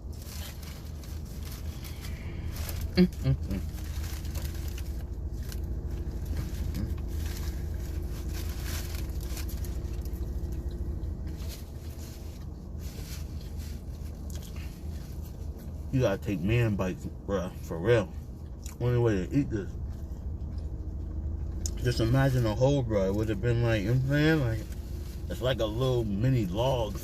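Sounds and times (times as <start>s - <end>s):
steady low hum: 0.0s - 27.0s
person chewing food: 13.3s - 15.8s, 19.8s - 21.8s.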